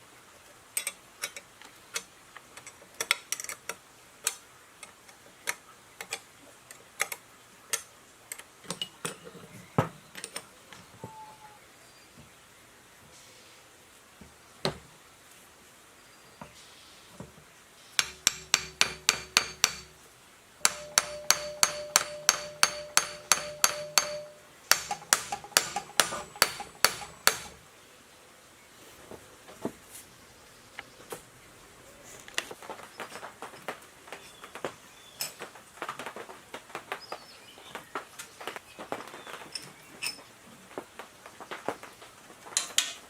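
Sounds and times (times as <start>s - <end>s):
hammer ringing on metal: 18.0s - 20.0s, 20.6s - 27.6s
metal tapping and clinking: 18.0s - 20.0s, 20.6s - 27.6s.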